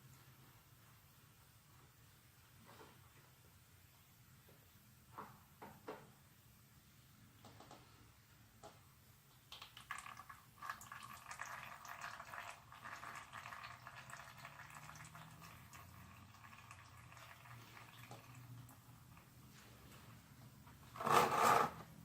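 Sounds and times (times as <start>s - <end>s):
oil trickling into drain pan: 9.5s - 19.4s.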